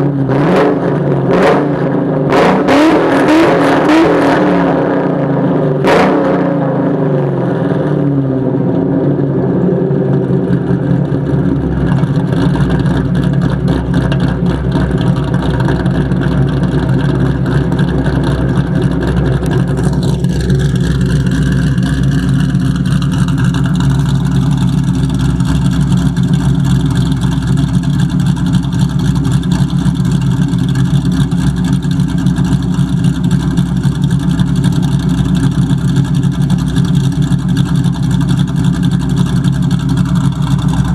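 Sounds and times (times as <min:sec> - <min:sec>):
car engine idling: 0:06.6 - 0:40.9
engine tapping noise: 0:10.2 - 0:40.9.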